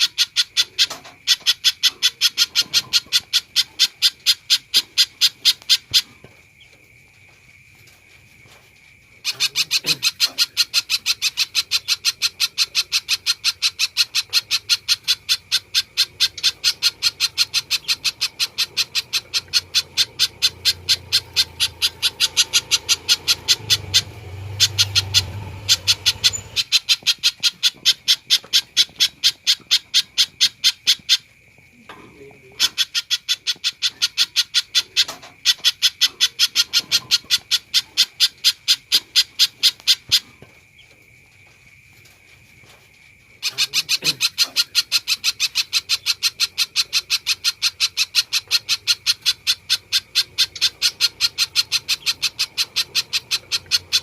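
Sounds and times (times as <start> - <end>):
bird calling in sharp repeated notes: 9.2 - 31.3, 43.4 - 54.0.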